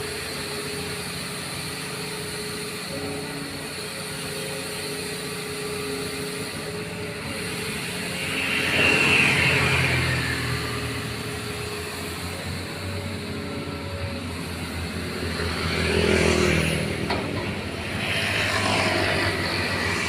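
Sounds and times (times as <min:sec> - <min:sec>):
excavator diesel engine running: 0:00.0 - 0:20.0
rushing sound: 0:17.6 - 0:20.0.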